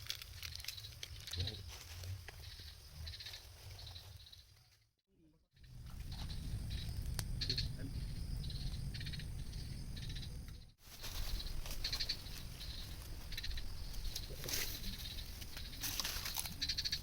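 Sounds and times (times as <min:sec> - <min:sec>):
frogs trilling: 0:00.4 - 0:04.5, 0:05.6 - 0:17.0
low rumble: 0:05.6 - 0:10.8.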